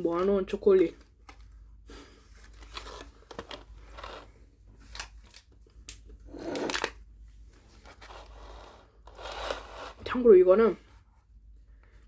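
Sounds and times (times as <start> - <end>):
chocolate bar crackling and crunching: 2.4 - 7.0.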